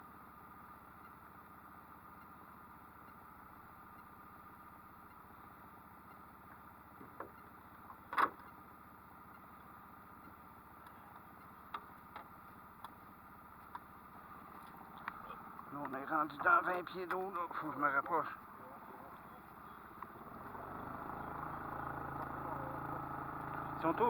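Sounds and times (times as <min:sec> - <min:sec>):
outboard motor running: 0:09.5 - 0:24.0.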